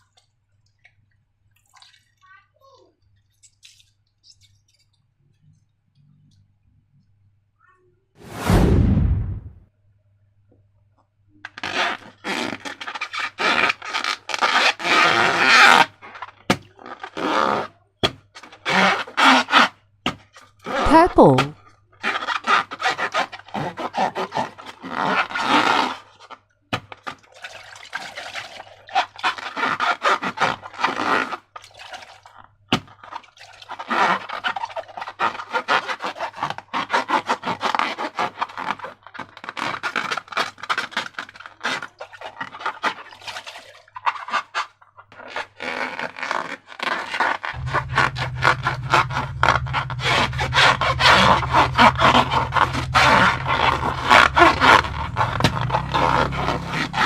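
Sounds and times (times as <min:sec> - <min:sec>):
low steady hum: 0:47.6 - 0:57.0.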